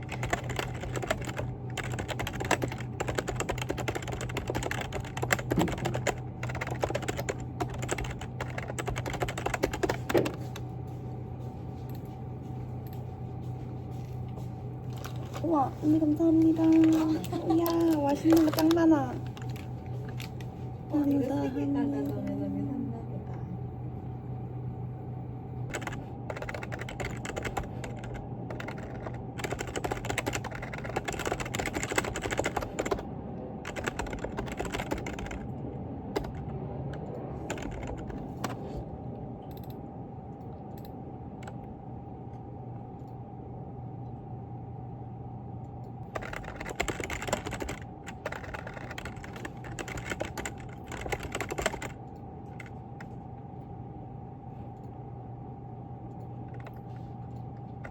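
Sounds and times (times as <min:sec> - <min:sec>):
typing on computer keyboard: 0:00.0 - 0:10.6, 0:16.4 - 0:20.3, 0:25.7 - 0:33.1, 0:33.7 - 0:35.5, 0:36.2 - 0:38.6, 0:46.1 - 0:53.1
steady hum: 0:00.0 - 0:57.9.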